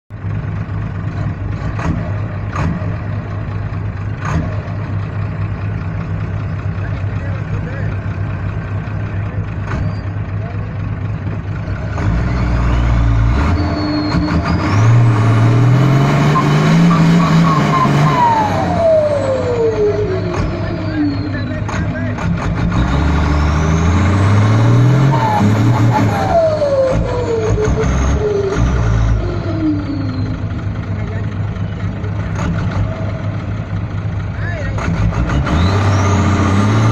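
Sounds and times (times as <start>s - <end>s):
diesel truck engine humming: 0.1s - 36.9s
turbocharger whistle: 12.6s - 21.7s, 24.6s - 30.5s.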